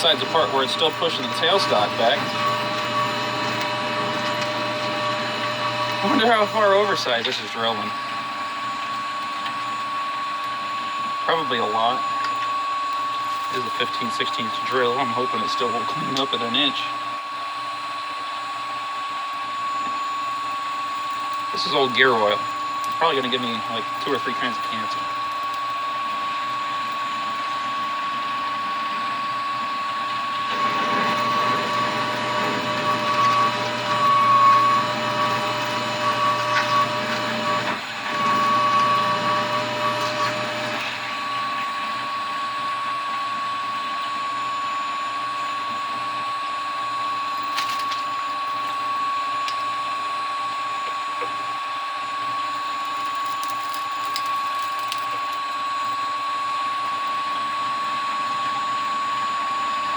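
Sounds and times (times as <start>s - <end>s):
core drill cutting into metal: 0.0s - 17.0s, 19.6s - 43.0s
lathe whining: 0.0s - 59.9s.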